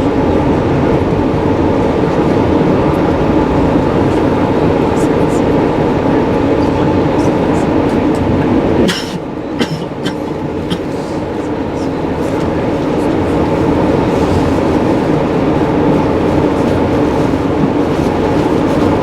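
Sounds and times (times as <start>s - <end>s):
train wheels rumbling on rails: 0.0s - 19.0s.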